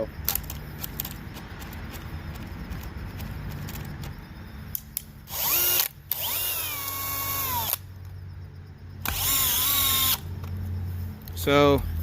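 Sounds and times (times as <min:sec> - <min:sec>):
cordless drill motor whine: 0:05.3 - 0:07.9, 0:09.0 - 0:10.3.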